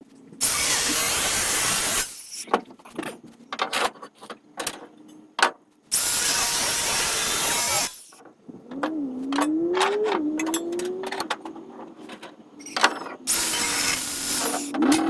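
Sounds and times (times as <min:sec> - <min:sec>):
welding crackling hiss: 0:00.4 - 0:02.4, 0:05.9 - 0:08.2, 0:13.3 - 0:14.7
sharp metallic clicks and knocks: 0:08.1 - 0:15.0.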